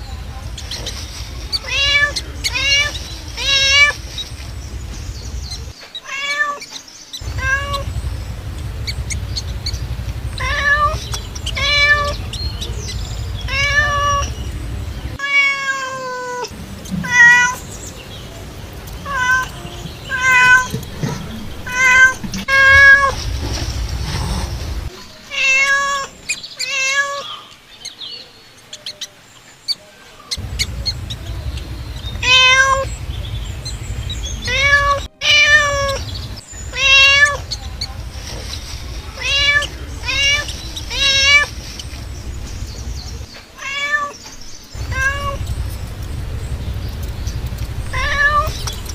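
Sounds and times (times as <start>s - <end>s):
cat meowing: 1.5s - 4.2s, 6.0s - 6.7s, 7.3s - 7.9s, 10.3s - 12.7s, 13.3s - 14.4s, 15.1s - 17.6s, 19.0s - 23.2s, 25.3s - 27.4s, 32.1s - 32.9s, 33.6s - 37.9s, 39.0s - 41.6s, 43.6s - 44.2s, 44.8s - 45.7s, 47.4s - 48.8s.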